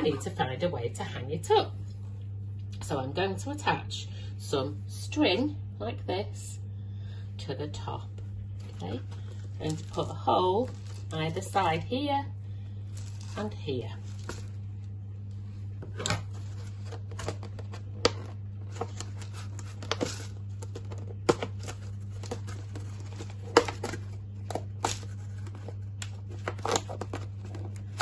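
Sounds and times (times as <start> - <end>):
low electrical hum: 0.0 - 28.0
plastic bottle crackling: 12.9 - 13.4, 14.0 - 14.6.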